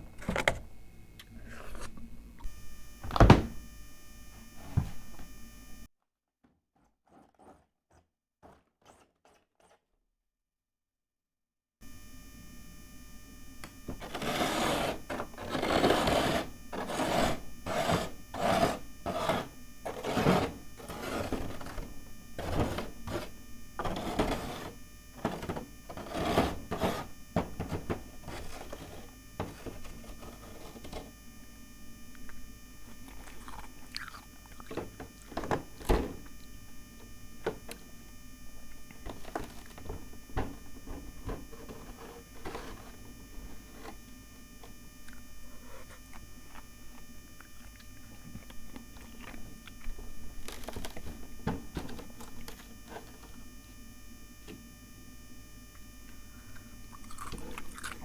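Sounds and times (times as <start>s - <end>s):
faint steady hum: 0.0s - 5.9s, 11.8s - 58.0s
spoon scraping frost: 6.8s - 9.9s, 14.0s - 31.1s, 39.0s - 40.0s, 41.1s - 44.0s.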